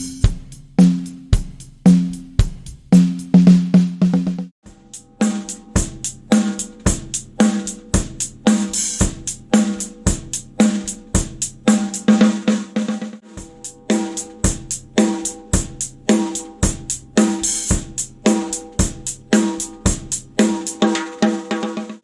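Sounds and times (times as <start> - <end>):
crash cymbal: 0.0 - 3.3
drum kit steady beat: 0.0 - 21.8
ringing snare drum: 0.0 - 22.0.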